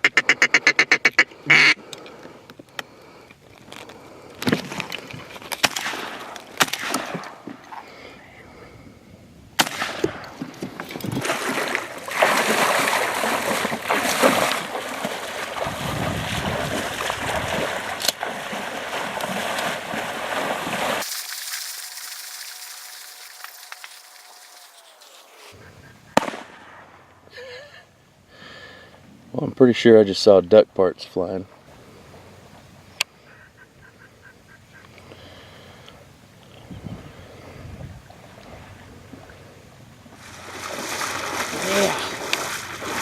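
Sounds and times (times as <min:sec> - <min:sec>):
water splashing and sloshing: 0:09.7 - 0:26.3, 0:40.1 - 0:43.0.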